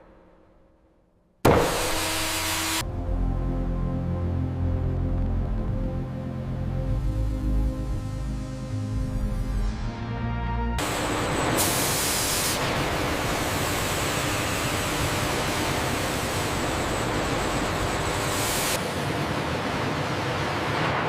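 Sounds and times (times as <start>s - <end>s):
sawmill machinery roar: 1.5s - 2.8s, 10.8s - 21.0s.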